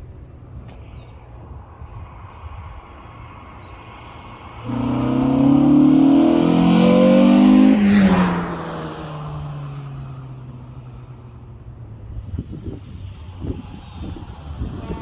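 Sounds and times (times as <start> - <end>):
car passing by: 2.4 - 10.3
car engine accelerating: 4.4 - 10.0.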